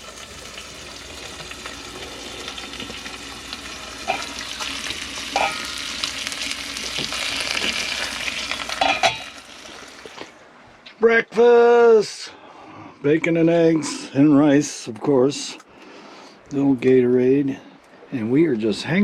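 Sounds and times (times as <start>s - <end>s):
food sizzling in a frying pan: 0.0s - 10.3s
utensil clinking against pan: 4.1s - 4.4s, 5.3s - 5.9s, 8.8s - 9.4s.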